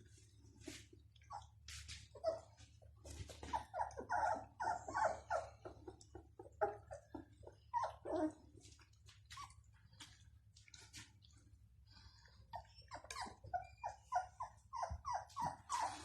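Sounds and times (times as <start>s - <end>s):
puppies giving high cries: 3.3s - 8.5s, 12.6s - 16.0s.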